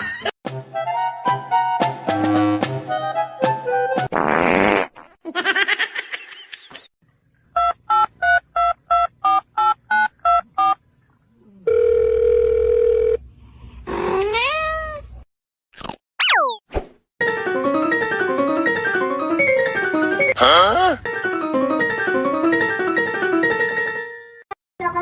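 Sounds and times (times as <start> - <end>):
steady dial tone: 11.7 - 13.2
cat meowing: 14.1 - 15.0
quick falling whistle: 16.2 - 16.6
short electronic beeps: 16.2 - 16.6.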